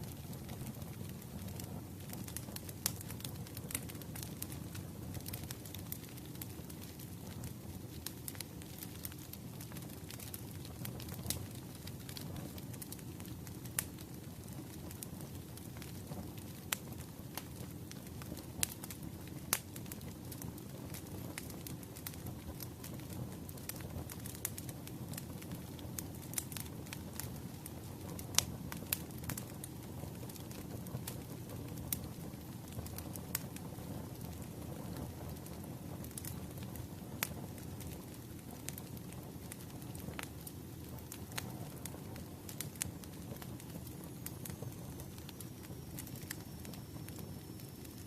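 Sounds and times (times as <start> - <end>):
low rumble of flames: 0.0 - 48.0
wood fire crackling: 0.0 - 48.0.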